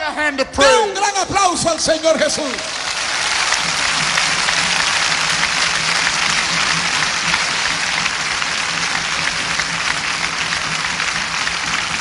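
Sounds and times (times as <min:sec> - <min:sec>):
congregation clapping: 0:01.6 - 0:12.0.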